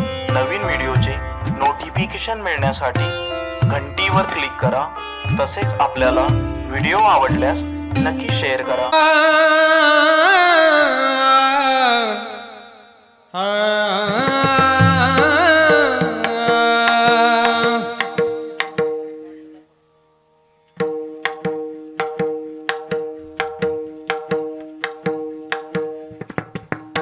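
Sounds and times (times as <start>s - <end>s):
person singing: 8.9s - 19.1s.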